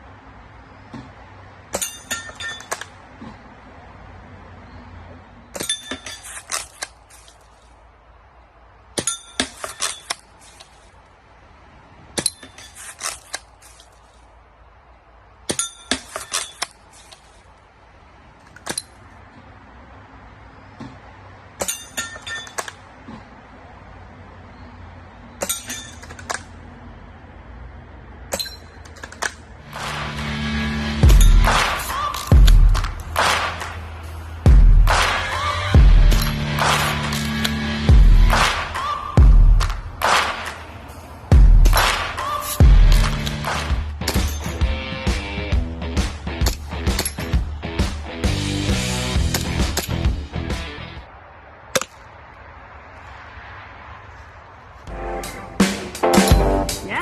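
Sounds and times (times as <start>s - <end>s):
pellets striking metal target: 31.0s - 33.8s.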